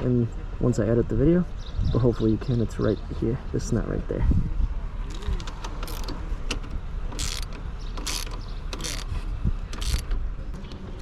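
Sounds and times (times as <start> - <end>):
hand ratchet clicking: 5.8 - 6.2, 7.2 - 9.1, 9.8 - 10.1.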